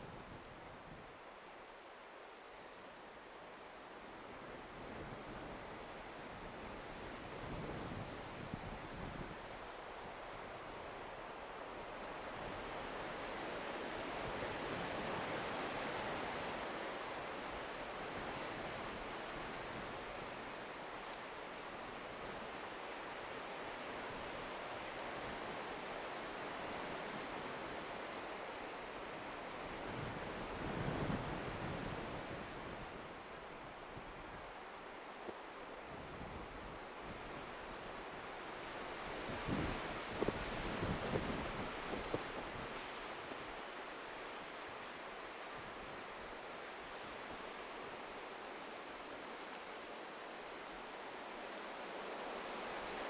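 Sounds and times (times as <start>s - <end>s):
strong wind blowing: 38.9s - 42.8s
wind buffeting microphone: 39.3s - 42.8s.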